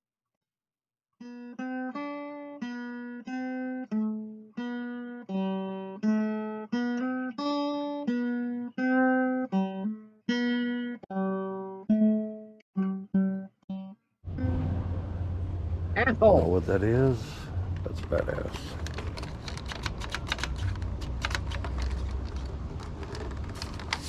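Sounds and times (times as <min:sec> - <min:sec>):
acoustic guitar plucked notes: 0:01.3 - 0:18.6.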